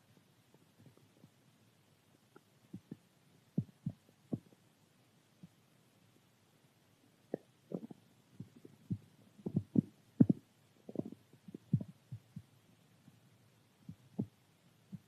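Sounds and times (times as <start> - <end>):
stomach gurgling: 2.2 - 4.6, 7.3 - 12.5.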